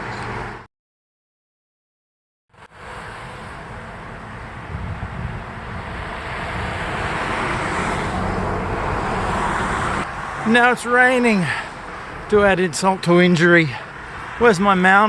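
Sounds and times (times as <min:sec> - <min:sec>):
road traffic: 0:00.0 - 0:00.7, 0:02.5 - 0:15.0
wind on microphone: 0:04.3 - 0:10.0.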